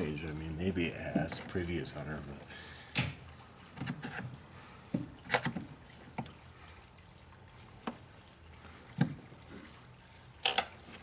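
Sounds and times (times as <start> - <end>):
plastic valve clicks and knocks: 2.9 - 4.2, 4.9 - 6.3, 10.4 - 10.8.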